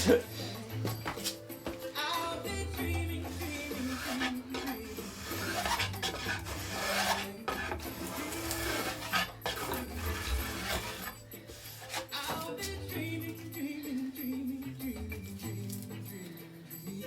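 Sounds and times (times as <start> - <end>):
hand plane shaving wood: 3.2 - 12.7.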